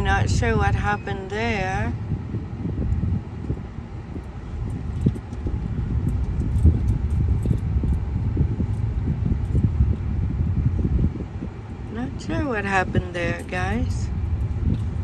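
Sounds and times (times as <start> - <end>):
car road rumble: 0.0 - 15.0
thuds over bumps: 2.7 - 10.0.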